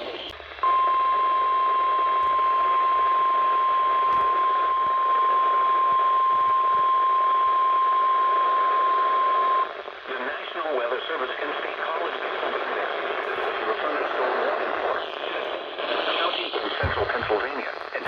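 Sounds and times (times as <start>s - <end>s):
radio hiss: 0.0s - 18.0s.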